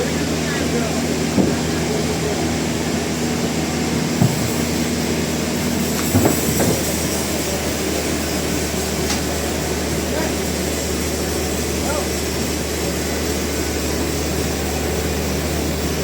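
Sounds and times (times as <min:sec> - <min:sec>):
sawmill machinery humming: 0:00.0 - 0:16.0
machinery clunks: 0:01.2 - 0:02.2, 0:03.7 - 0:07.6.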